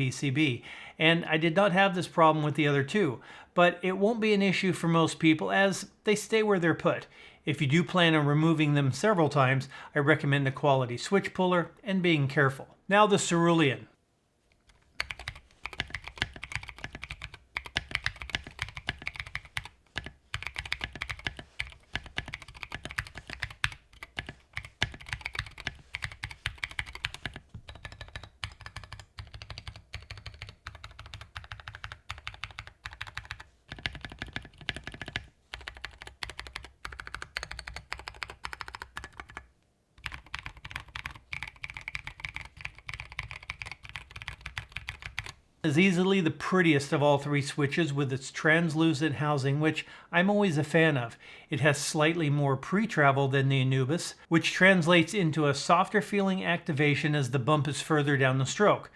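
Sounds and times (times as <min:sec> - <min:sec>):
mechanical keyboard typing clacks: 0:15.0 - 0:45.4.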